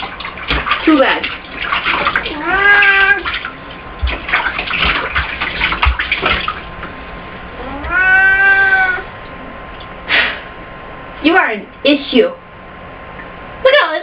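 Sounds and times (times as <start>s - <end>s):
water splashing: 0.0s - 7.0s
cat meowing in protest: 2.3s - 3.3s, 7.6s - 9.1s.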